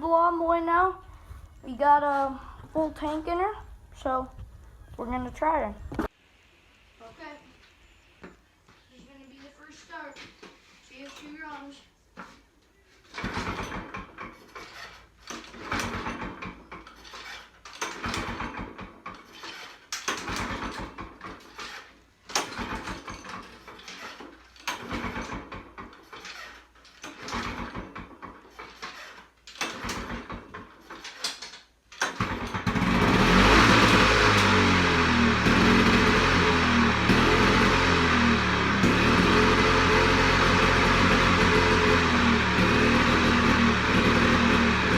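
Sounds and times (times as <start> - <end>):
recoil starter pulls: 13.0 - 44.9
mower engine running: 32.2 - 44.9.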